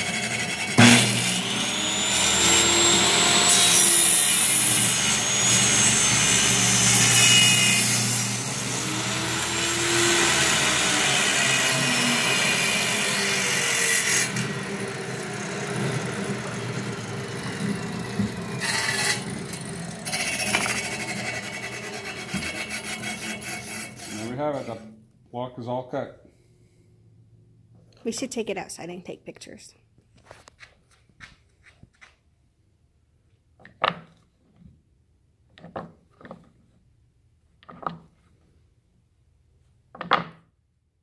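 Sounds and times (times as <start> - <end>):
table saw cutting wood: 0.0 - 25.0.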